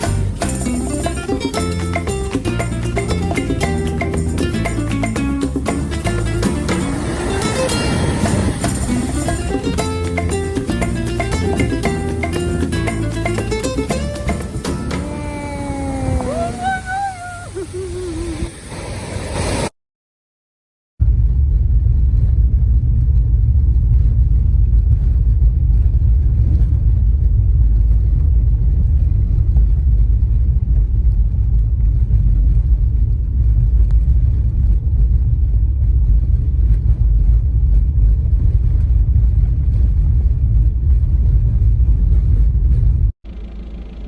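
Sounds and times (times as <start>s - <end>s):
strong wind buffeting microphone: 6.2s - 11.7s, 21.0s - 43.2s.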